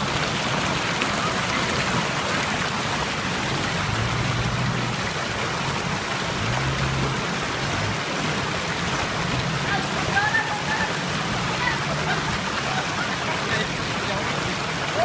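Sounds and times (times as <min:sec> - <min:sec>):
off-road vehicle rushing noise: 0:03.4 - 0:09.8.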